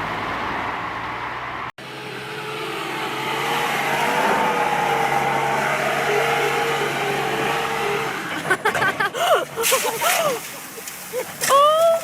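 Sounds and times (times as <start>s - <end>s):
vehicle engine revving high: 0.0s - 8.5s.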